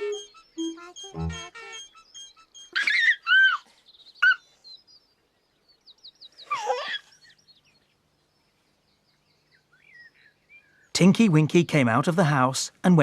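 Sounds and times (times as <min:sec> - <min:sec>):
whistled bird calls: 0:00.0 - 0:03.6
birds chirping and trilling: 0:00.0 - 0:12.4.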